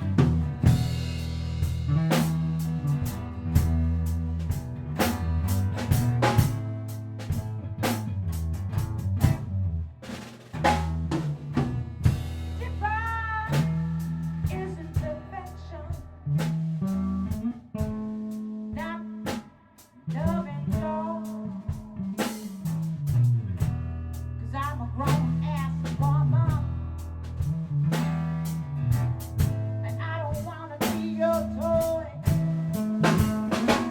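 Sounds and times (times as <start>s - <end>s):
electric guitar lead: 0.0s - 25.2s
bass guitar: 0.0s - 33.9s
drum kit: 0.0s - 33.9s.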